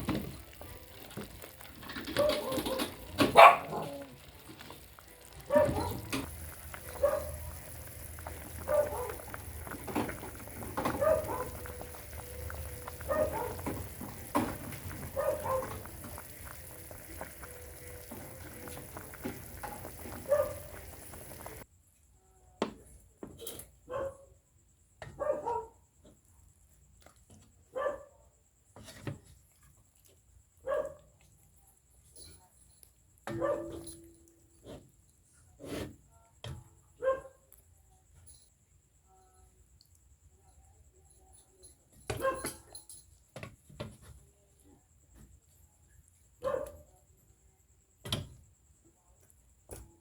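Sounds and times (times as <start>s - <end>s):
dog barking: 2.1s - 4.2s, 5.4s - 10.2s, 10.8s - 11.9s, 12.8s - 16.3s, 19.8s - 21.6s, 23.9s - 24.3s, 25.1s - 25.8s, 27.7s - 28.2s, 30.6s - 31.1s, 33.3s - 33.8s, 37.0s - 37.5s, 42.1s - 42.6s, 46.4s - 46.9s.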